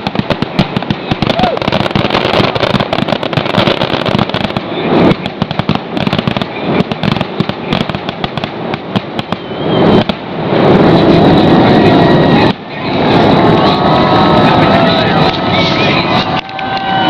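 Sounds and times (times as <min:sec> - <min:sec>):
fireworks popping and crackling: 0:00.0 - 0:17.0
loud steady noise: 0:00.0 - 0:17.0.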